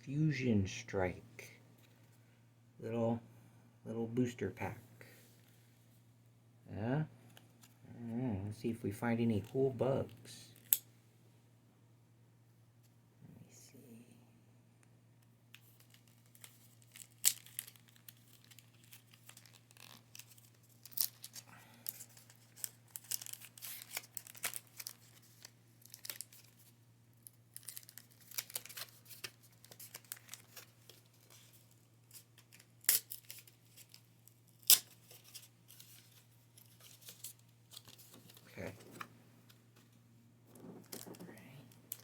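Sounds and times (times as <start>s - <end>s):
foil wrapper tearing and crinkling: 15.6s - 39.0s.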